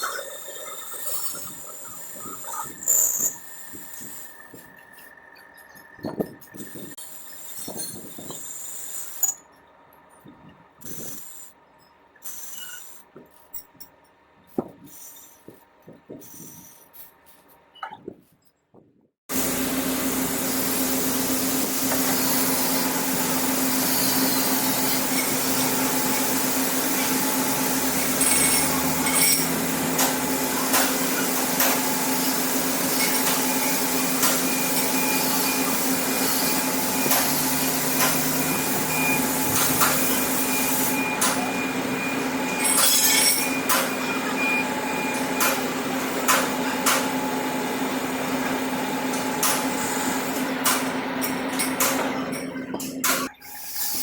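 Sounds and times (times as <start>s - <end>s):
machinery hum and hiss: 19.3s - 54.0s.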